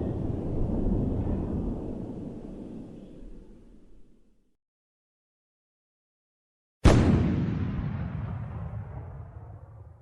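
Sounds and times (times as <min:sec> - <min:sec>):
explosion low rumble: 0:00.0 - 0:03.6, 0:06.9 - 0:10.0.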